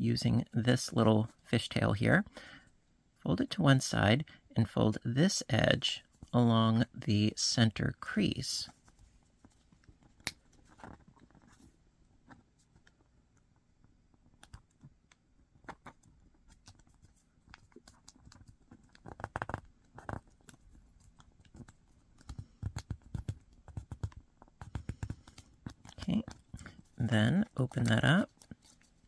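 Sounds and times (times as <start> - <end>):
paper crinkling and rustling: 23.1 - 29.0.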